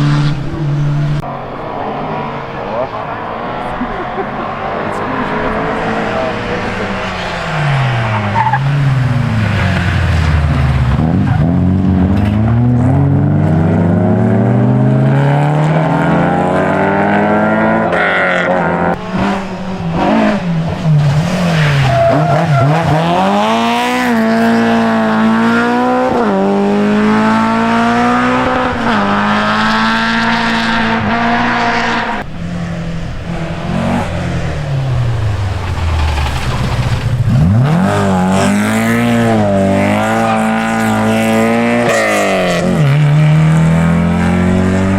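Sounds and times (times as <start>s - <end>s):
tyres squealing and skidding: 0.0s - 11.7s, 17.8s - 26.2s, 30.1s - 44.9s
rally car engine revving: 0.0s - 44.9s.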